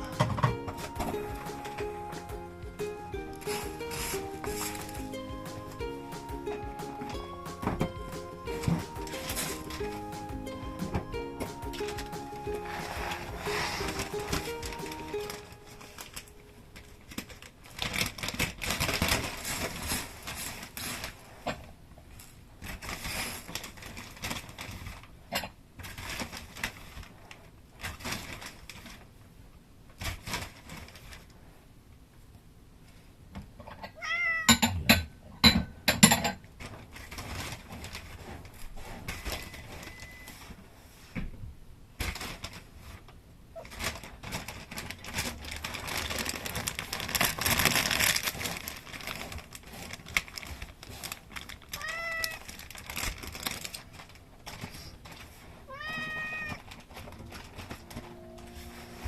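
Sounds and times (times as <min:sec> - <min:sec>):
rustling: 0:00.0 - 0:29.2, 0:29.9 - 0:31.6, 0:36.5 - 0:41.3, 0:41.9 - 0:59.0
cat meowing: 0:34.0 - 0:34.6, 0:51.8 - 0:52.5, 0:55.7 - 0:56.6.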